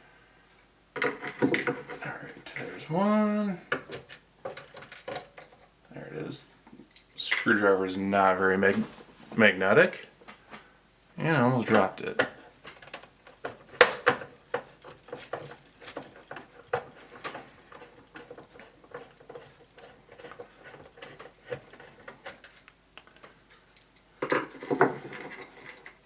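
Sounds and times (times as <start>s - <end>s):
clatter of handling: 12.2s - 26.0s.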